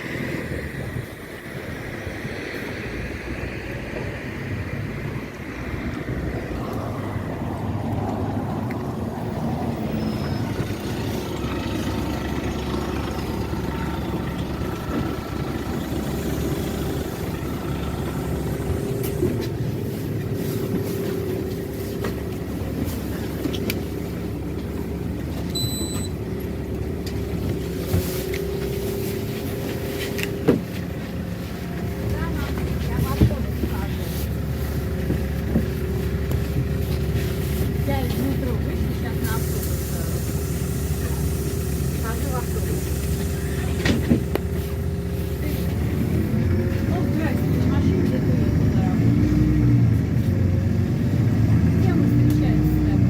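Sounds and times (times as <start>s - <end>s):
bus engine drone: 0.0s - 53.0s
road rumble: 0.0s - 53.0s
short electronic beep: 25.5s - 26.2s.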